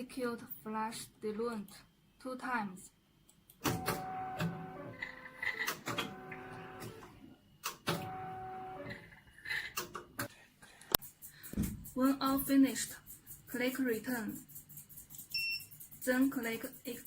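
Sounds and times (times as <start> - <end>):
motor whine with clicks: 3.6 - 9.0.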